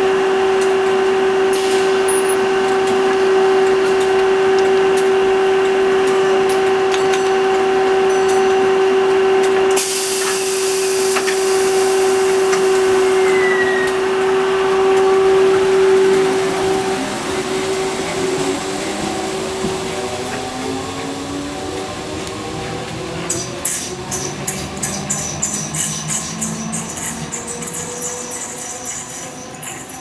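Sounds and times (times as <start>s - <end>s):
train electrical hum: 0.0s - 30.0s
hiss of escaping air: 9.8s - 14.4s.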